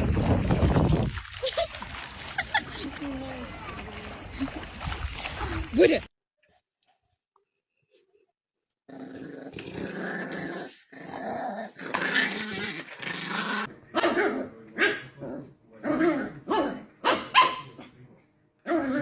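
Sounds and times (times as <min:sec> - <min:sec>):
dog growling: 0:08.9 - 0:14.4
dog barking: 0:14.0 - 0:15.1, 0:16.5 - 0:17.9.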